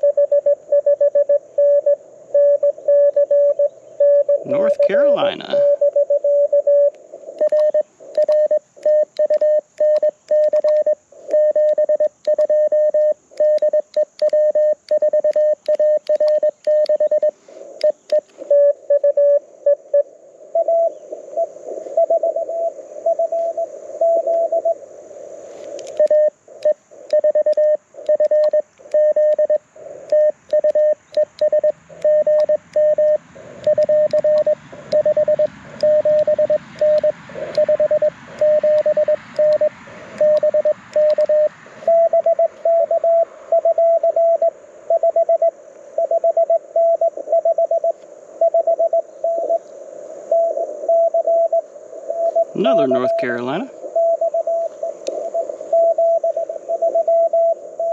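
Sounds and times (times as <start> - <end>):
morse code tone: 0.0 - 19.4, 25.9 - 47.9, 52.2 - 54.7, 55.7 - 57.9
receiver hiss: 0.0 - 57.9
higher pitched morse reply: 4.4 - 5.8, 52.5 - 53.7.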